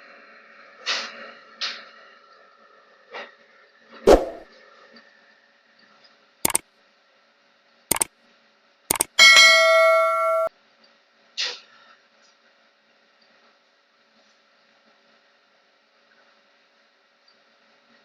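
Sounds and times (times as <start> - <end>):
brief soft sound: 4.1 - 4.4
sharp clicks: 8.9 - 9.2
electronic computer chime: 8.9 - 10.5.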